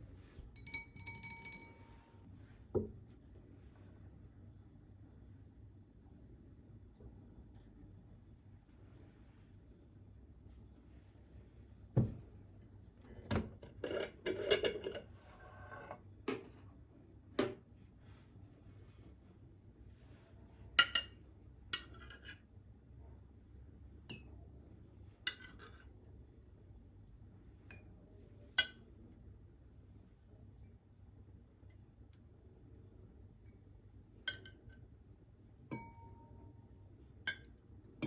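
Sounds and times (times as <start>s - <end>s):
dishes and utensils clinking: 0.5s - 2.1s.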